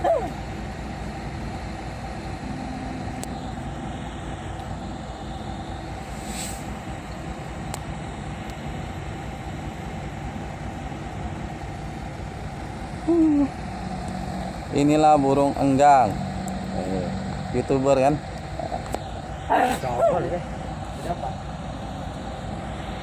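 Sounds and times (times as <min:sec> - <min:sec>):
low motor hum: 0:00.0 - 0:23.0
brief hiss: 0:06.1 - 0:06.7.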